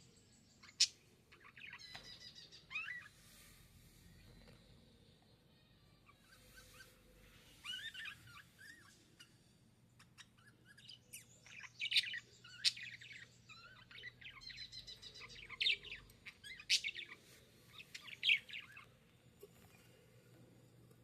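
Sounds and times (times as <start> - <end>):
budgerigars chirping and warbling: 0.6 - 3.2, 6.0 - 9.4, 10.0 - 18.9.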